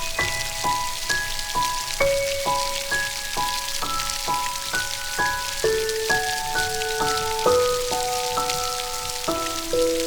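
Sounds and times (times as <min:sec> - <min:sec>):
rain pattering: 0:00.0 - 0:10.0
soft lullaby melody: 0:00.0 - 0:10.0.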